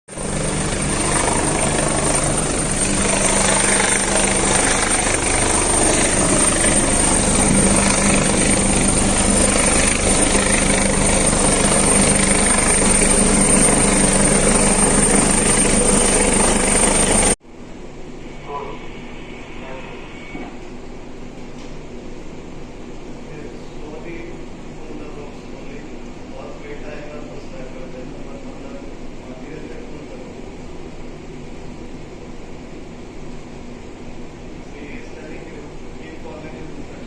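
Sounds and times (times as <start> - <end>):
helicopter running: 0.1 - 17.4, 34.6 - 37.0.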